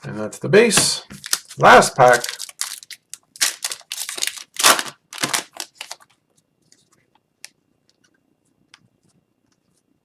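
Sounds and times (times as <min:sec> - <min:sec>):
wrapper crinkling and tearing: 0:01.2 - 0:06.1.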